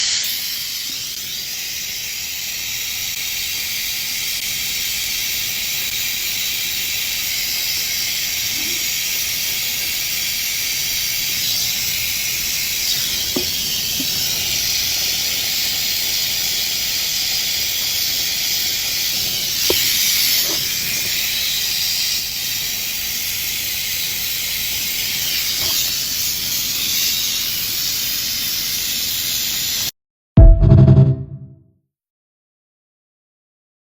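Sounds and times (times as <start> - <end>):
gas hissing from nozzle: 0.0 - 29.9.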